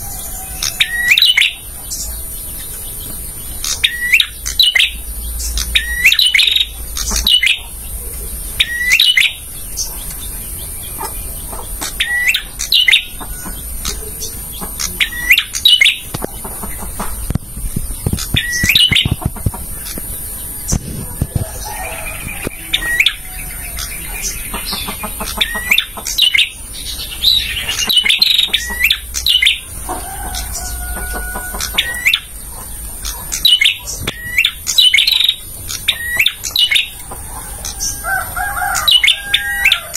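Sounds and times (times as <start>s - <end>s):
other birds calling: 0.0s - 39.9s
bird sharp chirps: 3.5s - 21.0s.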